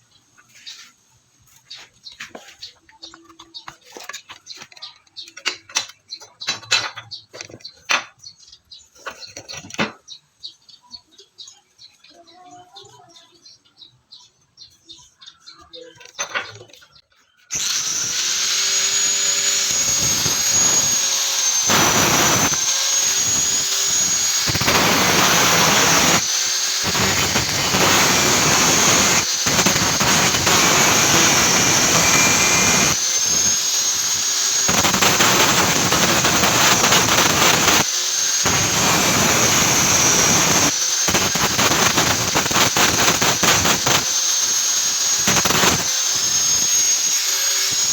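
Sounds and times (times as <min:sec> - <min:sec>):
angle grinder grinding steel: 0:17.5 - 0:47.9.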